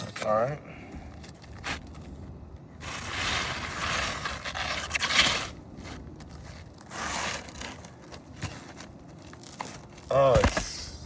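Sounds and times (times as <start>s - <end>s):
tool scraping against roof shingles: 2.8s - 10.8s.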